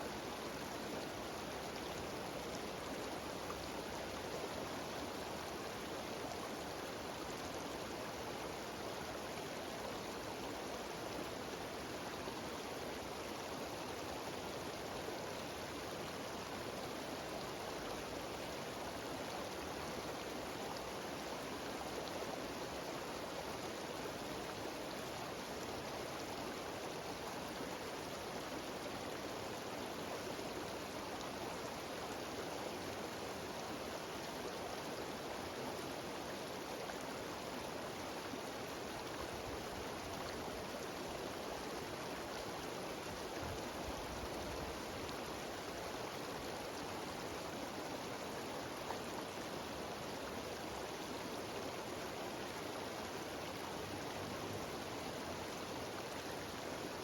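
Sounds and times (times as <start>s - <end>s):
mountain stream and waterfalls: 0.0s - 57.0s.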